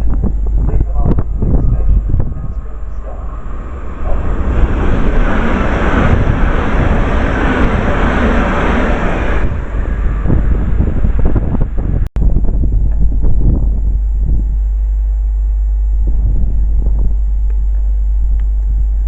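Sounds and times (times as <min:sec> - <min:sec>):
train passing at speed: 0:00.0 - 0:12.1
wind buffeting microphone: 0:00.0 - 0:19.0.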